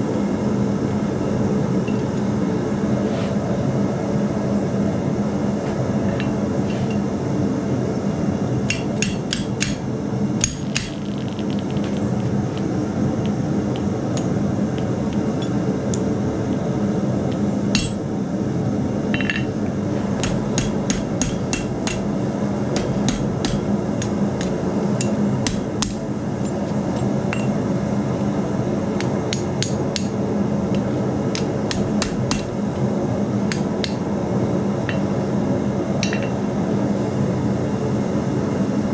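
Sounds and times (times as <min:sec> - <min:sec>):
low hum: 0:03.6 - 0:29.0.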